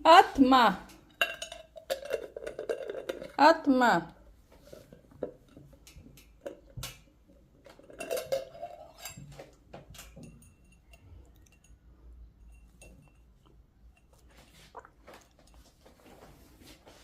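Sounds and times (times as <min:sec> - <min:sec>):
small hard objects knocking: 0:01.2 - 0:03.4.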